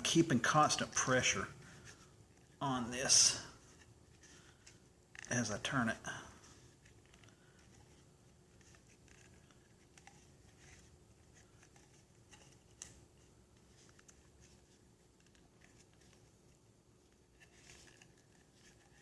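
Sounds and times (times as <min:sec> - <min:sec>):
cord rustling on plastic sheath: 0:00.0 - 0:19.0.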